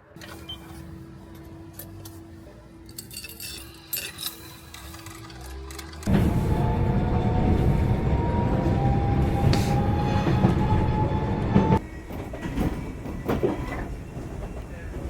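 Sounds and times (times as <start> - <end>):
train rumbling on rails: 6.1 - 15.0.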